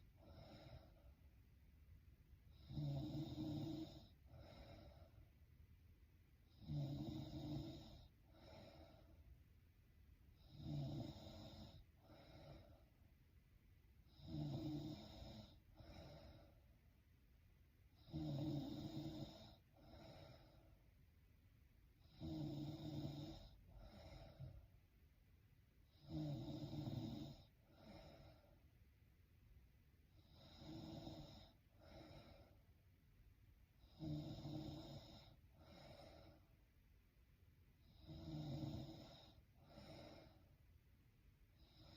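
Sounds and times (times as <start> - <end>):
woman snoring: 0.2 - 1.0, 2.5 - 5.2, 6.5 - 9.1, 10.4 - 12.8, 14.1 - 16.6, 17.9 - 20.7, 22.0 - 24.6, 25.9 - 28.6, 30.2 - 32.6, 33.8 - 36.5, 37.8 - 40.5, 41.6 - 41.9.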